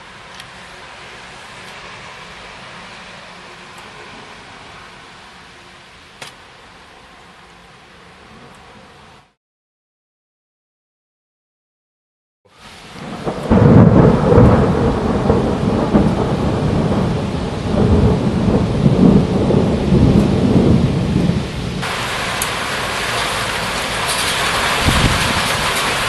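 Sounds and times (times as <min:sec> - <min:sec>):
rain hissing: 0:00.0 - 0:09.4, 0:12.5 - 0:26.0
thunder crack and rumble: 0:12.9 - 0:26.0.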